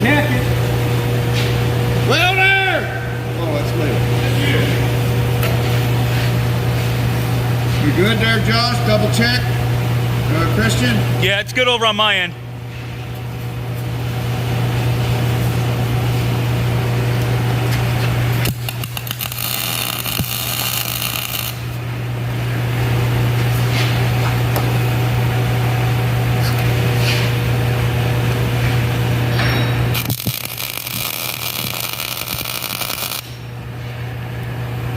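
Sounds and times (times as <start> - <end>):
constant low hum: 0.0 - 34.9
welding arc crackling: 18.2 - 21.8, 29.9 - 33.5.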